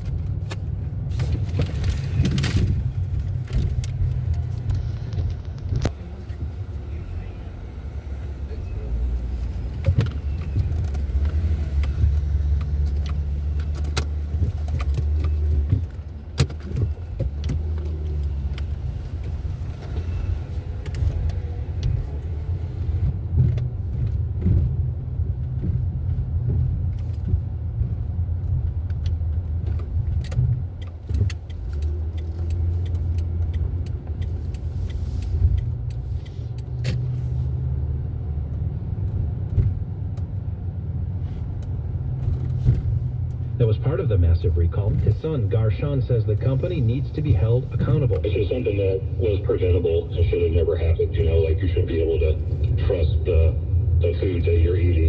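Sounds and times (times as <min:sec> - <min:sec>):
road and engine rumble: 0:00.0 - 0:55.0
faint clicks and rattles: 0:25.3 - 0:37.4.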